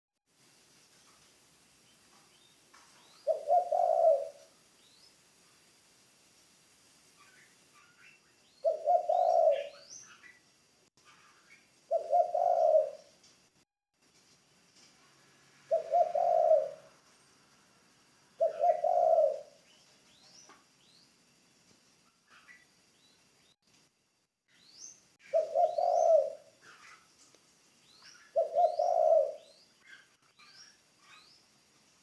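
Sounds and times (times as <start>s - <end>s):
small birds chirping: 0.8s - 5.7s, 7.0s - 13.4s, 15.7s - 17.3s, 18.4s - 23.8s, 24.5s - 32.0s
dove cooing: 3.2s - 4.5s, 8.6s - 10.0s, 11.9s - 13.2s, 15.7s - 17.0s, 18.4s - 19.6s, 25.2s - 27.1s, 28.1s - 30.2s.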